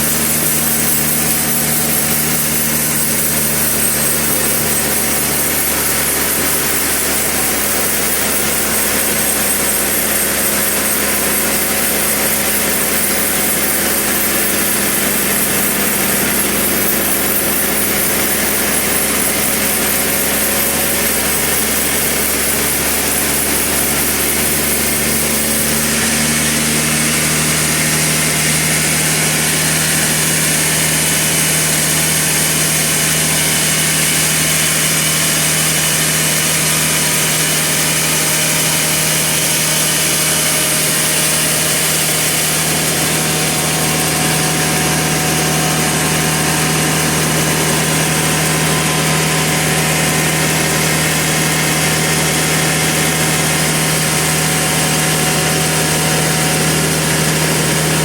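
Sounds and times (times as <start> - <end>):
engine drone: 0.0 - 58.0
saw noise: 0.0 - 58.0.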